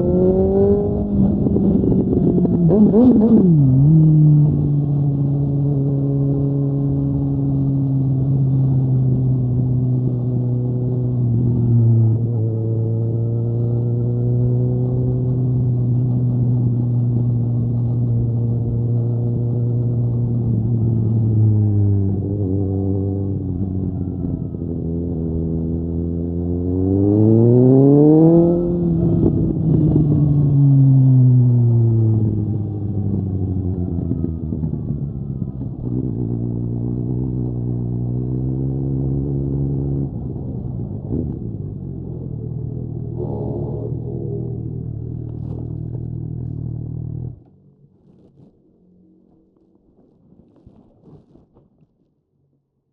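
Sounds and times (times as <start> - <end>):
motorcycle engine: 0.0 - 49.8
motorcycle engine running: 40.1 - 48.3.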